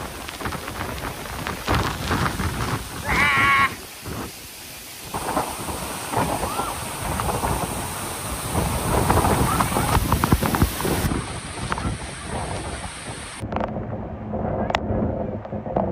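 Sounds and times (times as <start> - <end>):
waterfall rushing: 0.0 - 13.4
faint voices: 8.6 - 13.1.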